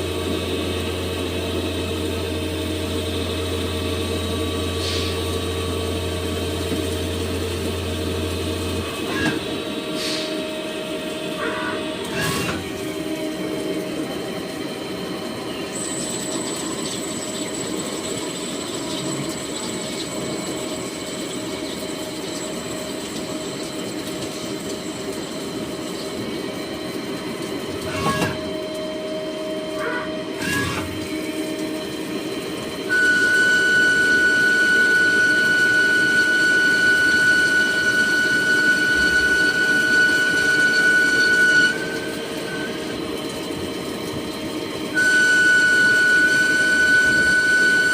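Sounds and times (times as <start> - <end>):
high machine whine: 0.0 - 47.9
lathe machine humming: 0.0 - 47.9.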